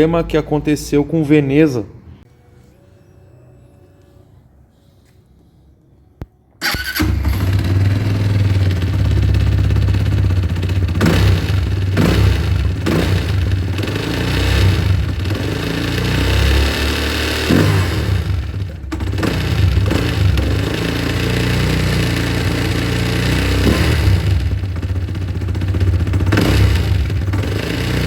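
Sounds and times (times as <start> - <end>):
motorcycle engine starting and revving: 6.6 - 28.0.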